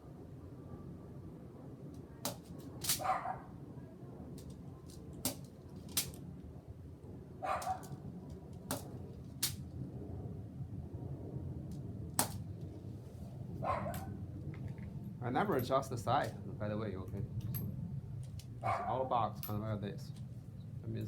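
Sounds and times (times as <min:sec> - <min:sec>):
air revolver shots: 0:02.3 - 0:03.2, 0:05.2 - 0:06.1, 0:12.2 - 0:12.4
dog barking: 0:03.0 - 0:03.5, 0:07.4 - 0:07.9, 0:13.6 - 0:14.2, 0:18.6 - 0:19.1.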